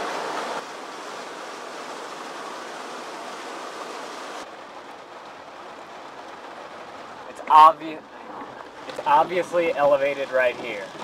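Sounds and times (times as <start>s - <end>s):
rain falling: 0.0s - 11.0s.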